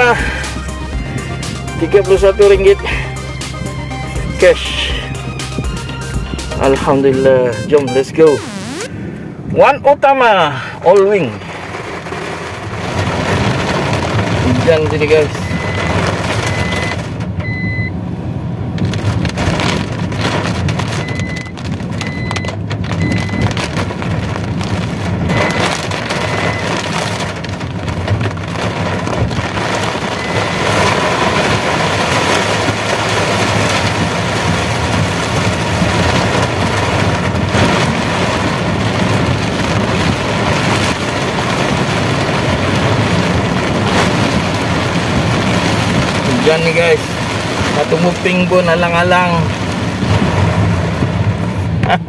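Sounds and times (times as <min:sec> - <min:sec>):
heavy rain on a car: 0:00.0 - 0:09.0, 0:09.6 - 0:52.0
car engine hum: 0:00.0 - 0:10.0, 0:10.8 - 0:52.0
road noise: 0:00.0 - 0:52.0
short high beeps: 0:07.5 - 0:08.9.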